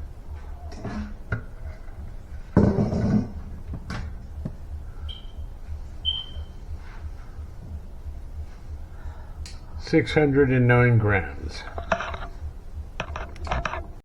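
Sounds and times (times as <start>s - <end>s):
short high chirps: 5.0s - 6.6s.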